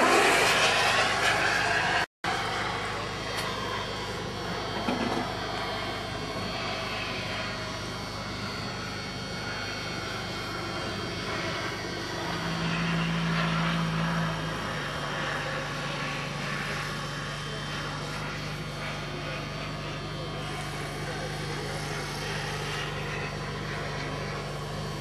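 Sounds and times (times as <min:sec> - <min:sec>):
aircraft engine noise: 0:00.0 - 0:25.0
low hum: 0:00.0 - 0:25.0.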